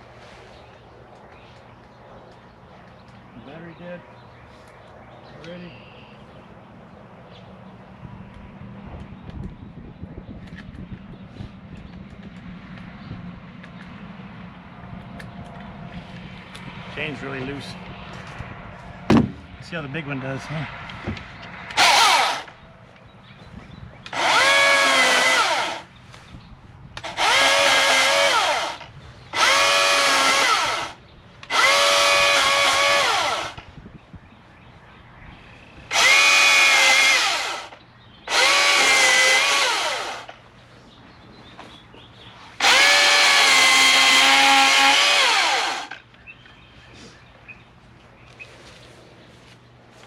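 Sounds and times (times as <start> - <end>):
chainsaw cutting wood: 21.7 - 22.5, 24.1 - 25.9, 27.0 - 33.7, 35.9 - 40.4, 42.6 - 46.1.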